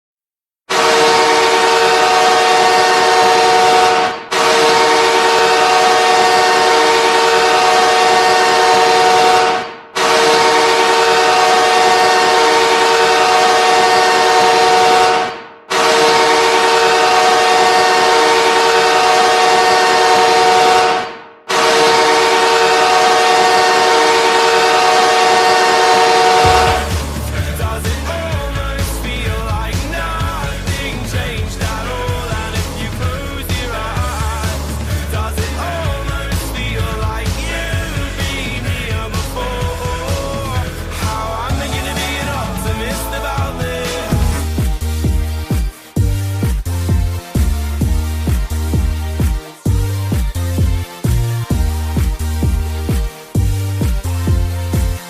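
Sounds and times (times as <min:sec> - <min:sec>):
arena goal horn blasts: 0:00.7 - 0:27.2.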